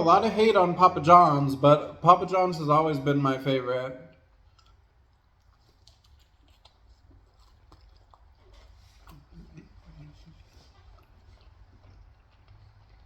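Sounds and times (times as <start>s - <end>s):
faint chewing: 4.1s - 13.0s.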